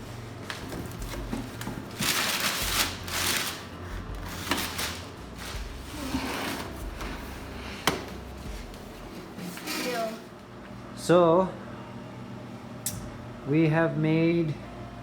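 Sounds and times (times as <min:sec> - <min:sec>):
rustling handling noise: 0:00.0 - 0:10.3.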